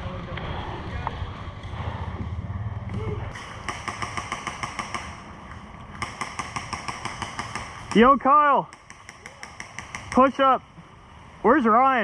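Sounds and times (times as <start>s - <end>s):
low rumble of wind: 0.0s - 12.0s
airsoft guns firing: 3.3s - 10.5s.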